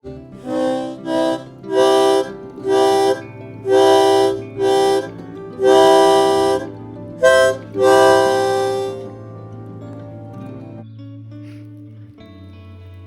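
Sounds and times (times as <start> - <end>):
harmonica chords: 0.4 - 10.3.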